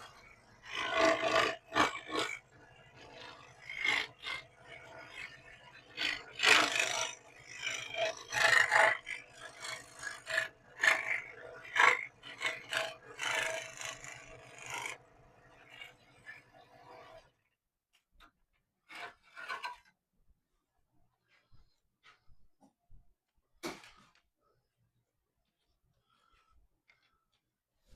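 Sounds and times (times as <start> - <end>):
file rasping on hard edge: 0.0 - 17.3, 18.8 - 19.9.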